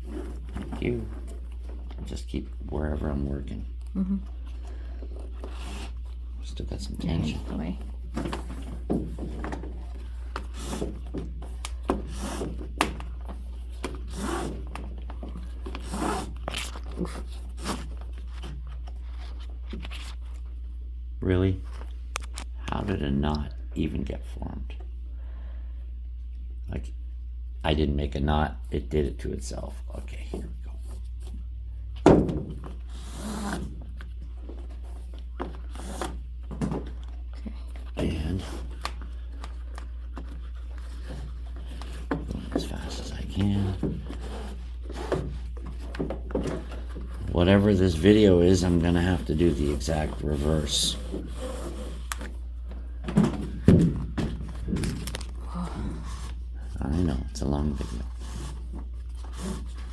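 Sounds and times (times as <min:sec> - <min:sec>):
rope rustling and rubbing: 0:04.3 - 0:20.6, 0:32.6 - 0:52.8, 0:55.9 - 0:59.9
rope rasping through drum hoops: 0:32.8 - 0:52.1.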